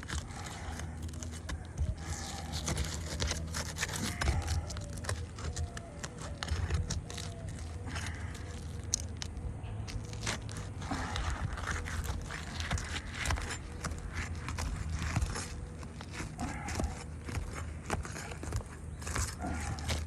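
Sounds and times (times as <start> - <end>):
roof shingles crackling apart: 0.0 - 20.0
steady low hum: 0.0 - 20.0.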